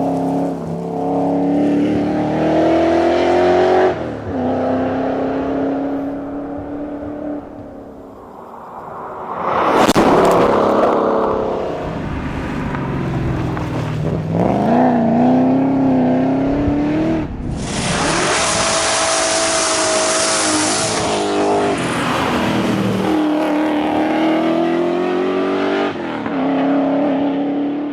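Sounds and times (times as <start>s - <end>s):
car engine accelerating hard: 9.7s - 27.9s
wind or road noise hiss: 17.4s - 23.2s.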